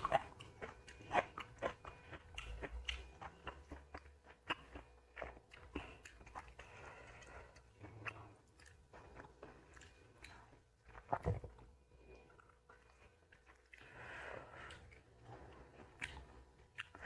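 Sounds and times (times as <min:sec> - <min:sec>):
food crunching: 0:00.0 - 0:17.0
person chewing: 0:00.0 - 0:17.0.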